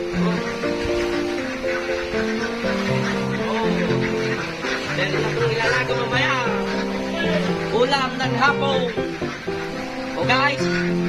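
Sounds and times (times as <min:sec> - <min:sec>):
instrumental music with held notes: 0:00.0 - 0:11.0.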